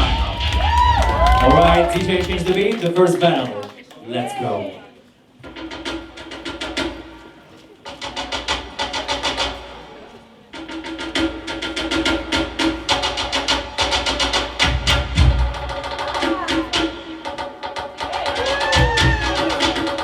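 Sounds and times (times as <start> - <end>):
dance track with clicking percussion: 0.0 - 3.7, 10.6 - 20.0.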